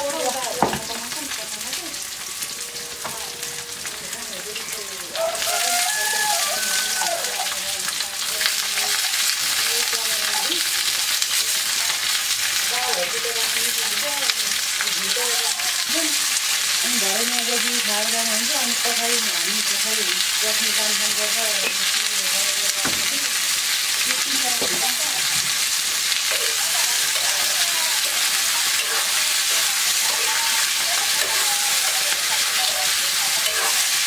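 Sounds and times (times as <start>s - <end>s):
vegetables sizzling in hot oil: 0.0s - 34.0s.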